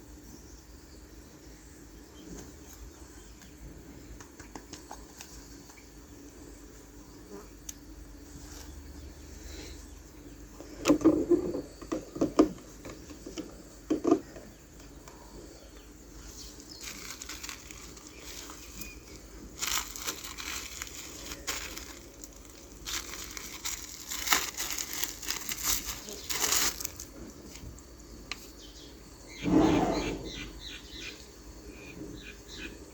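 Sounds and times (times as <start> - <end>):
plastic packaging crinkling: 16.5 - 27.6
small parts knocking: 16.8 - 27.1.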